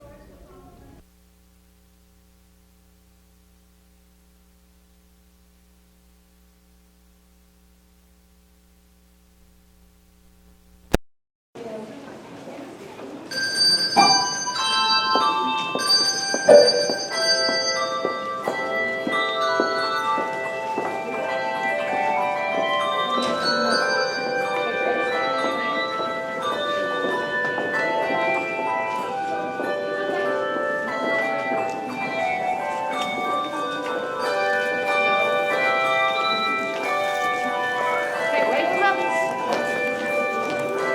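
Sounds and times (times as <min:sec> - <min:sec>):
faint electrical mains hum: 0:00.0 - 0:11.0
handbell choir playing: 0:13.3 - 0:40.9.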